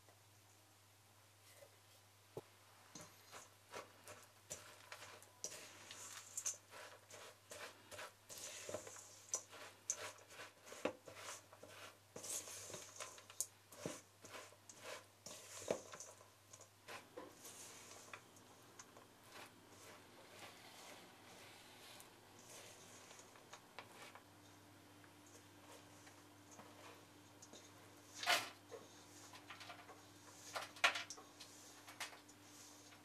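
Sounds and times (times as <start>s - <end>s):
kitchen utensils tapping and rustling: 28.2s - 33.0s.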